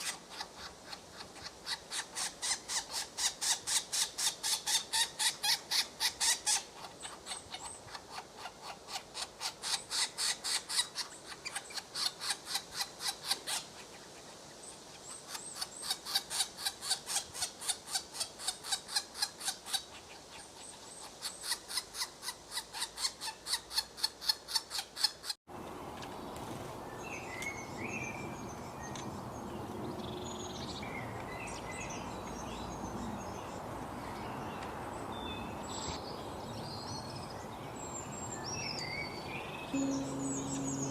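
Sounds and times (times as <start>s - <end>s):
background hiss: 30.2s - 40.9s
small bird chirps: 38.4s - 40.9s
bird calling rapid notes: 39.7s - 40.9s.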